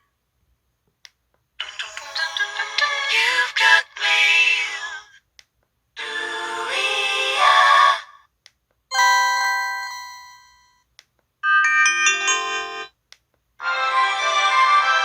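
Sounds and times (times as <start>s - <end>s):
electronic melody of stepped tones: 2.0s - 2.9s
ringing chime: 8.9s - 10.8s, 11.4s - 12.9s.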